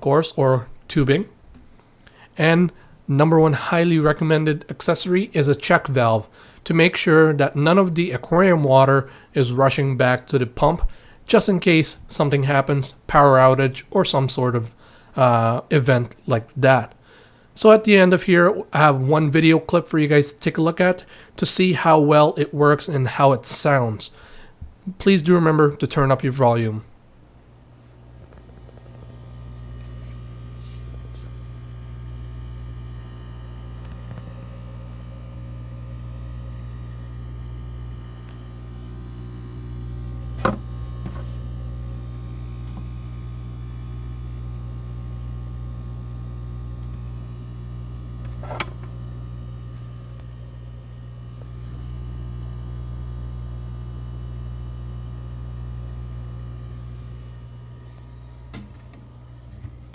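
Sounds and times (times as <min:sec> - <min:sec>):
aquarium air pump humming: 0:18.5 - 0:59.9.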